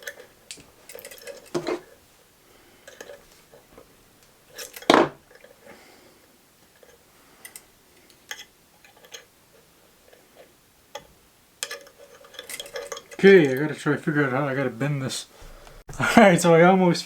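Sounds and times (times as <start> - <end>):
metal tools clicking and tapping: 0.0 - 2.0, 2.8 - 5.6, 6.6 - 9.3, 10.1 - 13.7
tools clattering: 0.0 - 2.0, 2.8 - 5.7, 6.6 - 13.7.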